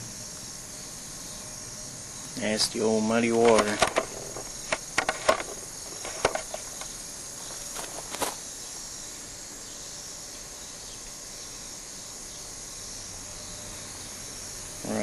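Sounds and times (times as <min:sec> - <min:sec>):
insects chirring: 0:00.0 - 0:15.0
clicks and knocks of handling: 0:03.3 - 0:06.9.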